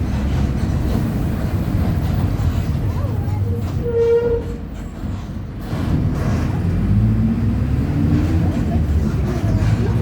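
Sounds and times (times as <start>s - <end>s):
bus diesel engine at high revs: 5.0s - 10.0s.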